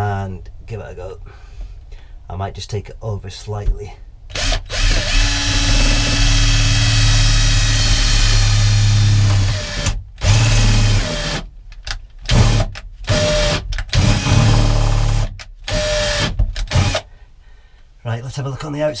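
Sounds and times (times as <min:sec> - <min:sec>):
electric drill boring: 0:04.3 - 0:11.4, 0:12.3 - 0:17.0.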